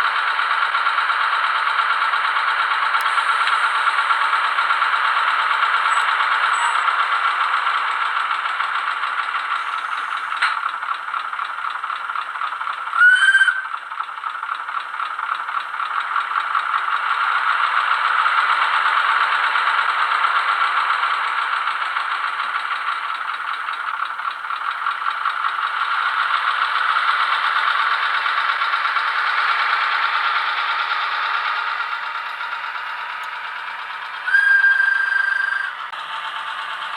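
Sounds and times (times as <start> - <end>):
model diesel engine through small speaker: 0.0 - 36.9
click: 3.0 - 3.6.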